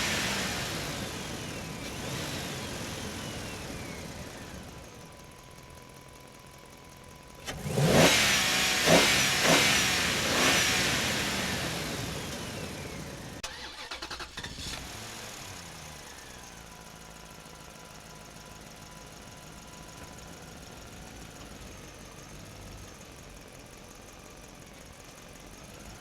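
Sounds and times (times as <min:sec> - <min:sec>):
heavy machine engine revving: 0:00.0 - 0:04.6, 0:07.5 - 0:15.6.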